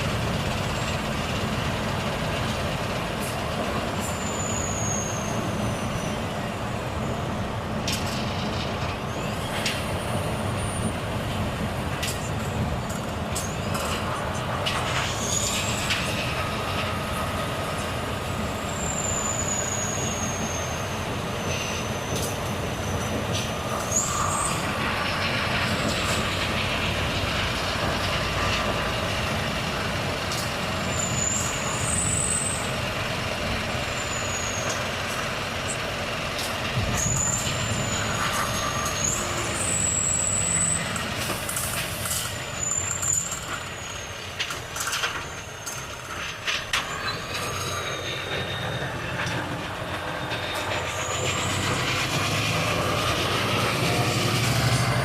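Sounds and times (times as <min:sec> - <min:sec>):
truck engine and road noise: 0:00.0 - 0:55.0
high wavering squeals: 0:18.5 - 0:26.3, 0:46.7 - 0:55.0.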